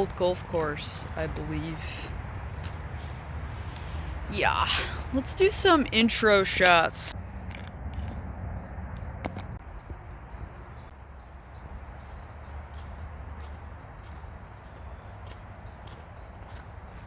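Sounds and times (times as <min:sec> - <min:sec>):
insects trilling: 0:08.6 - 0:16.8.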